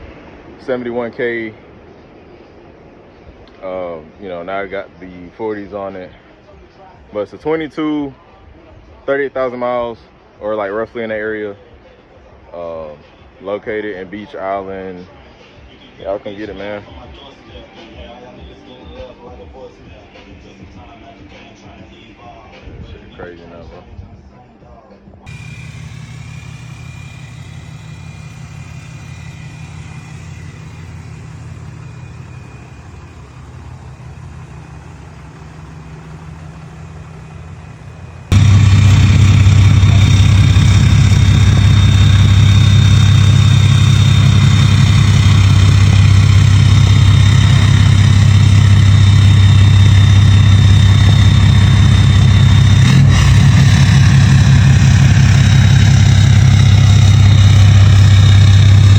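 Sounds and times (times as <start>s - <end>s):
diesel pickup idling: 25.3s - 58.9s.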